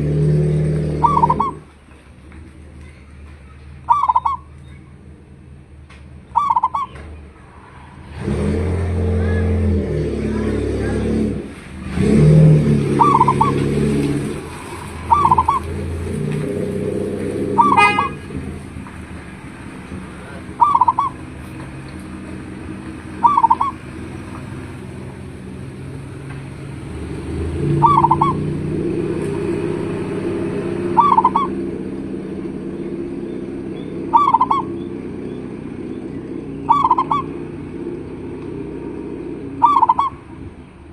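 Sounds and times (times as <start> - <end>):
low engine hum: 0.0 - 40.9
dove cooing: 0.8 - 1.7, 3.9 - 4.5, 6.3 - 7.2, 12.8 - 18.5, 20.3 - 24.8, 27.3 - 28.8, 30.8 - 31.6, 34.0 - 34.9, 36.6 - 37.5, 39.6 - 40.3.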